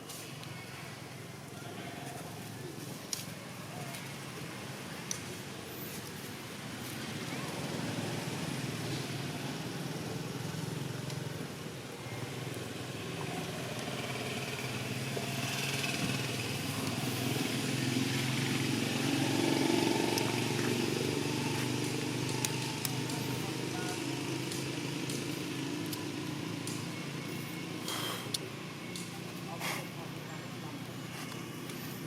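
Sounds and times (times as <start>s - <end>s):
motor engine running: 12.1s - 32.0s.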